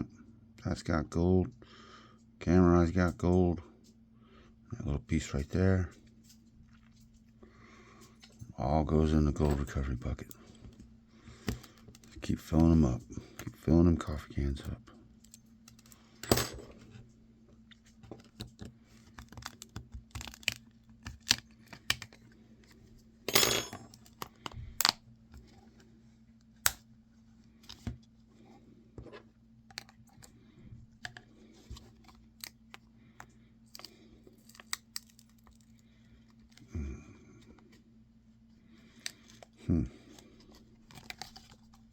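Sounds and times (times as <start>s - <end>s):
steady low hum: 0.0s - 41.9s
phone parts clicking and clattering: 15.2s - 16.8s, 18.0s - 22.3s.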